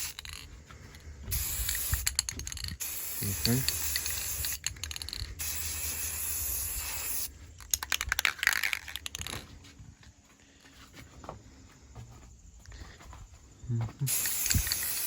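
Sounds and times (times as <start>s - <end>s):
aerosol spray can hissing: 0.0s - 0.4s, 1.3s - 7.3s, 14.1s - 15.0s
clicks and rattles: 7.6s - 9.5s.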